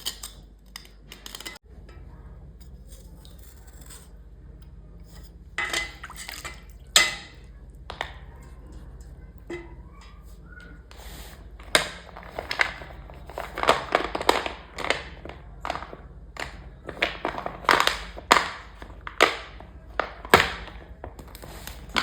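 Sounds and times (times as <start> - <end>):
metal clank: 0.0 - 10.9
metal kitchen items scraping: 0.0 - 22.0
steady low hum: 0.0 - 22.0.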